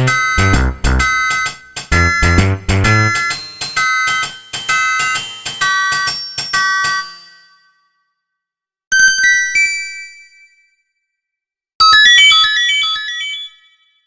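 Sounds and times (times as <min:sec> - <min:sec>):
synthesized bell-like ringtone melody: 0:00.0 - 0:07.9, 0:11.9 - 0:14.0.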